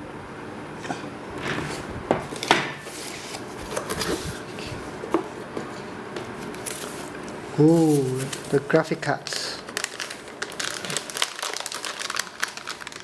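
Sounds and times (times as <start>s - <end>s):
cardboard box rustling and scraping: 1.6s - 8.5s.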